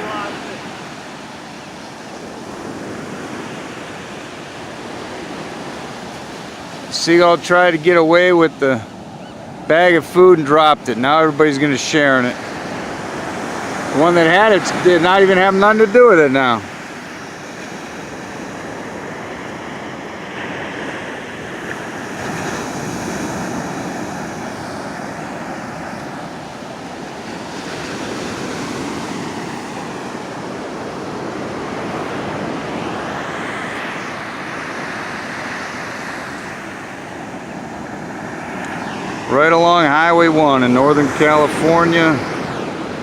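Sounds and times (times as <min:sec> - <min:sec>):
ocean surf washing in: 0:00.0 - 0:43.0
wind on microphone: 0:16.4 - 0:39.7.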